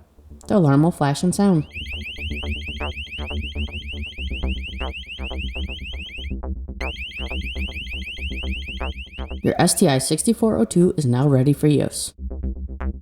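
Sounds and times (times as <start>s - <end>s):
door alarm chirping: 1.5s - 10.4s.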